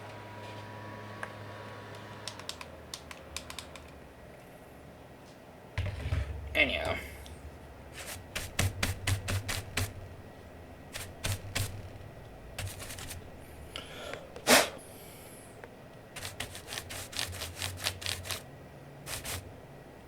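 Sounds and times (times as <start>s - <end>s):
keyboard clicking: 2.3s - 4.0s
brush rubbing swishes: 7.9s - 10.0s, 10.9s - 11.9s, 12.6s - 13.3s, 16.2s - 18.4s, 19.1s - 19.5s.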